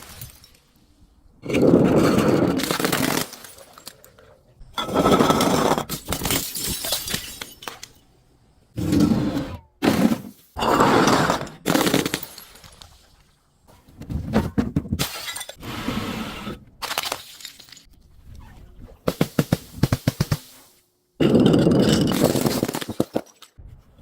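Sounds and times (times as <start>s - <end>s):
glass breaking and crunching: 2.2s - 4.0s, 5.8s - 8.0s, 15.0s - 15.6s
sharp glass cracks: 6.0s - 8.0s.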